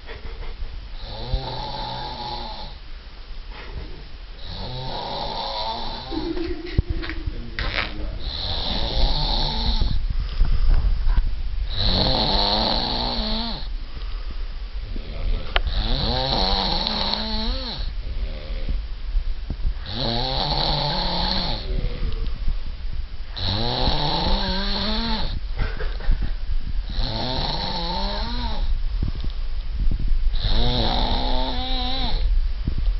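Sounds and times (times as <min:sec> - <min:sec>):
person snoring: 0:01.0 - 0:02.8, 0:04.4 - 0:10.0, 0:11.7 - 0:13.7, 0:15.0 - 0:18.8, 0:19.8 - 0:22.3, 0:23.4 - 0:25.4, 0:26.9 - 0:28.7, 0:30.4 - 0:32.3.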